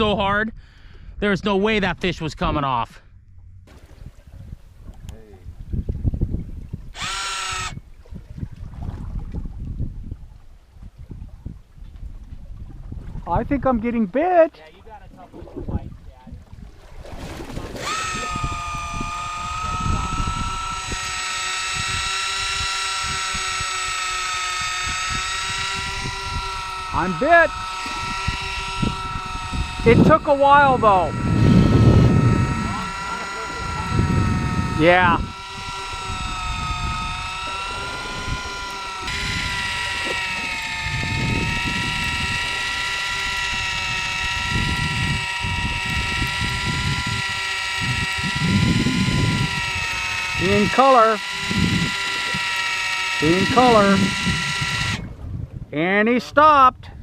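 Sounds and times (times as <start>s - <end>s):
low wind rumble: 0.0s - 55.8s
fishing reel motor whining: 6.9s - 8.0s, 17.7s - 55.2s.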